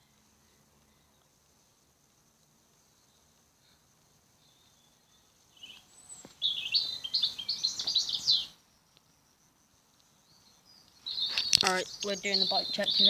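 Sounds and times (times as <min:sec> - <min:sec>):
songbird chirping and warbling: 0:04.3 - 0:13.0.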